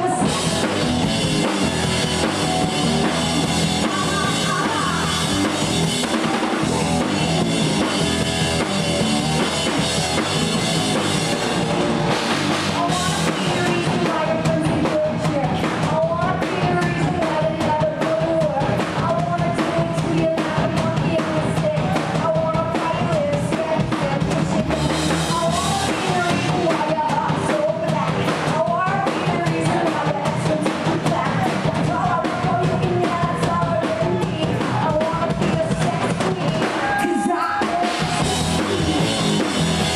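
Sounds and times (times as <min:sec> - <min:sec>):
woman singing: 0:00.0 - 0:00.6, 0:03.4 - 0:05.4, 0:12.8 - 0:38.2
drum kit: 0:00.0 - 0:39.9
live rock band playing: 0:00.0 - 0:39.9.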